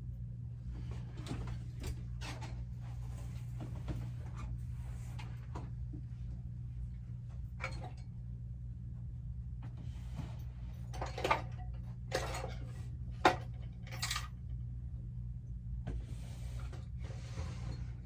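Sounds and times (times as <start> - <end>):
steady low hum: 0.0 - 18.0
metal tools clattering: 13.8 - 14.3.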